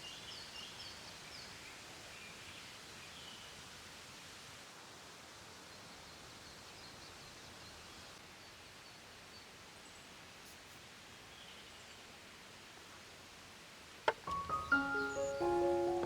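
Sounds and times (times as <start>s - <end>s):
steady hiss: 0.0s - 16.0s
faint high chirps: 14.2s - 16.0s.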